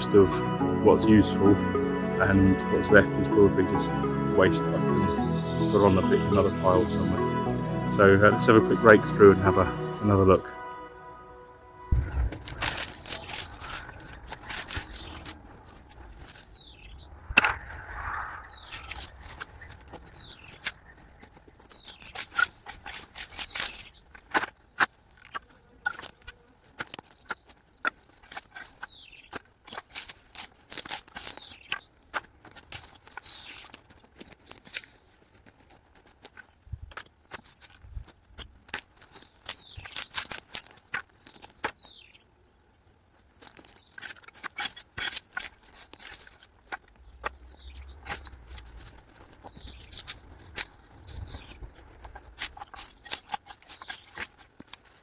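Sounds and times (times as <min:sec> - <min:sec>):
rake scraping through branches: 0:11.9 - 0:42.1, 0:43.2 - 0:55.0
twigs snapping: 0:11.9 - 0:55.0.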